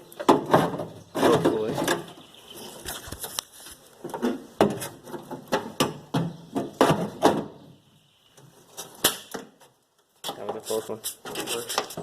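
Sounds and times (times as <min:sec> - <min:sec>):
sharp metal knocks and clicks: 0:04.1 - 0:07.5.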